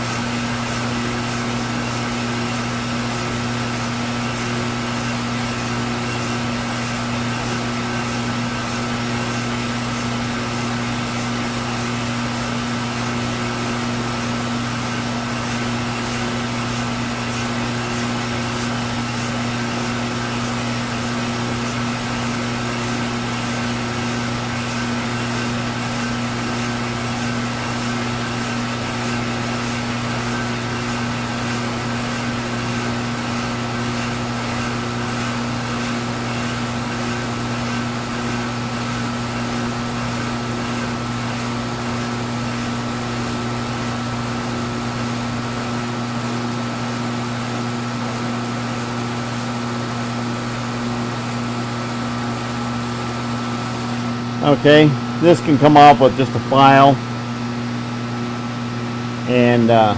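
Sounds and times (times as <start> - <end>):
machine tool humming: 0.0 - 47.2.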